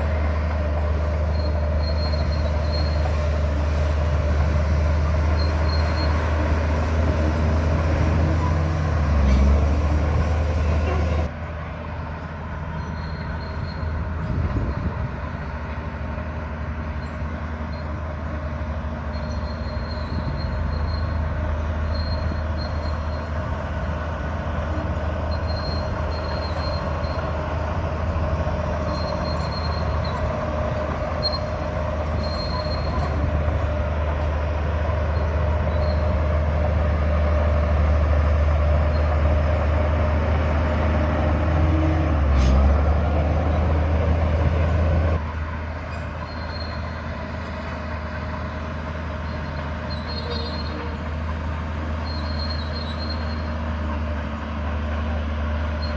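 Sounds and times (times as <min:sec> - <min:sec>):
tracks clanking: 0:00.0 - 0:11.3, 0:13.0 - 0:55.9
bulldozer diesel engine under load: 0:00.0 - 0:55.9
thin high squeal: 0:49.9 - 0:51.0, 0:52.0 - 0:53.5.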